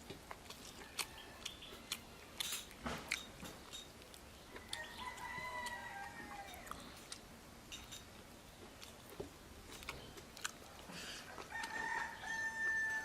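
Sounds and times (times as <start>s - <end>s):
chewing and smacking: 0.0s - 12.4s
rooster crowing: 4.5s - 6.8s, 11.3s - 13.0s.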